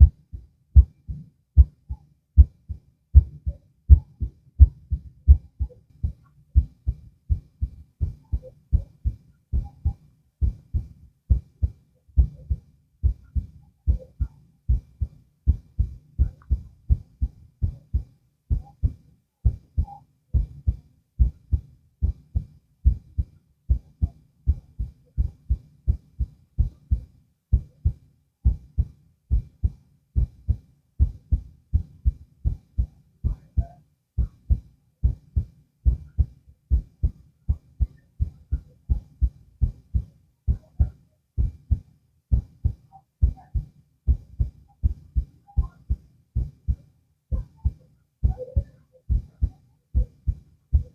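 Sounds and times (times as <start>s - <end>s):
heartbeat through stethoscope: 0.0s - 50.9s.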